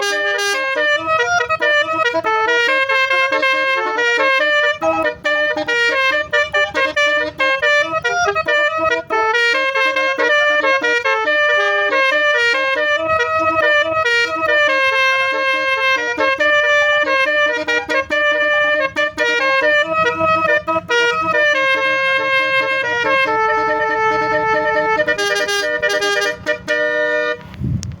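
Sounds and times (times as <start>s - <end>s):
multi-note air horn melody: 0.0s - 27.8s.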